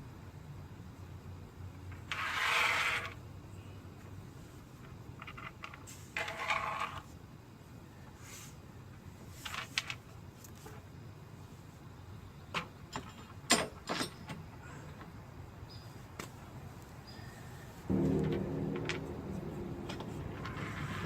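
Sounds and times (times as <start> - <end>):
metal hardware clicks and knocks: 12.6 - 14.4, 17.9 - 20.8
low steady hum: 16.6 - 21.0.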